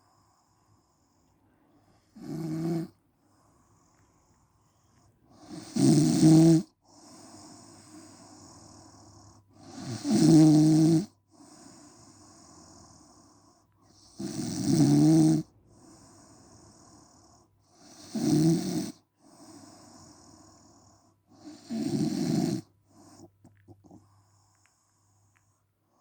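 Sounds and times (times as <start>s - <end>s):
woman snoring: 2.2s - 3.0s, 5.4s - 13.1s, 14.0s - 15.5s, 17.8s - 23.3s.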